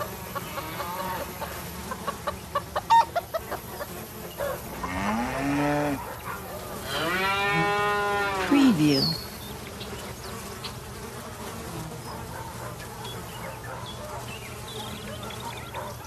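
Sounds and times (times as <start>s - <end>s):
cows mooing: 4.7s - 6.0s, 6.8s - 8.6s.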